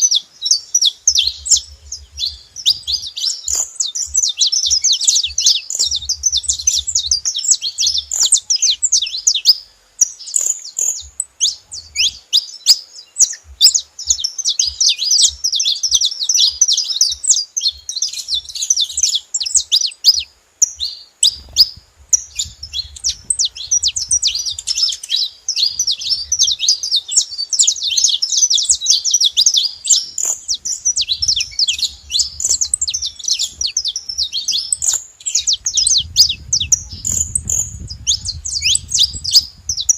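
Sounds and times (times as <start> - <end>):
finches chirping: 0.0 - 39.9.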